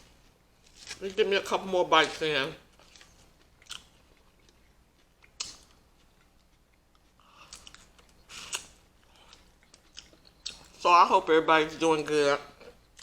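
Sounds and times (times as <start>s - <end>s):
person chewing food: 2.6s - 10.8s, 12.0s - 13.0s
wet mouth sounds: 5.2s - 10.8s.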